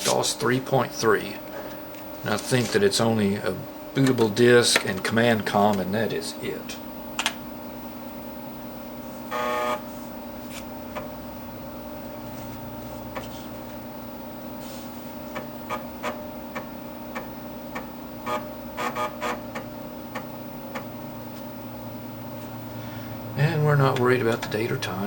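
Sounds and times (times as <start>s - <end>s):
computer fan hum: 0.0s - 25.0s
floppy drive clicks: 4.0s - 6.0s, 7.1s - 7.5s, 10.9s - 11.3s, 15.3s - 21.5s, 23.8s - 24.6s.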